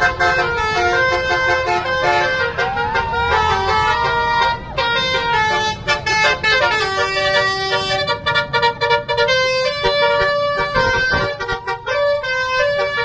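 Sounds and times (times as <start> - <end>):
multi-tone musical bus horn: 0.0 - 13.0.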